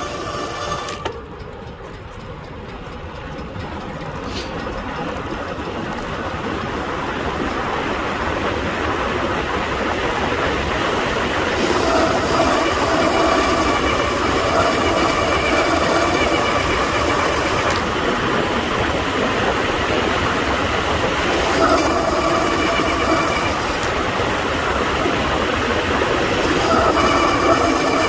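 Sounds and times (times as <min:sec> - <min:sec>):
disc brakes squealing: 0:10.8 - 0:18.0, 0:21.2 - 0:25.2, 0:26.3 - 0:28.0.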